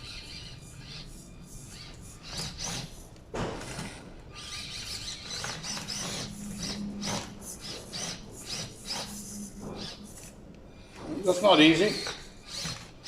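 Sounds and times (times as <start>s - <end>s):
toy car motor humming: 0.0s - 13.0s
tyres scraping on obstacles: 1.8s - 10.4s.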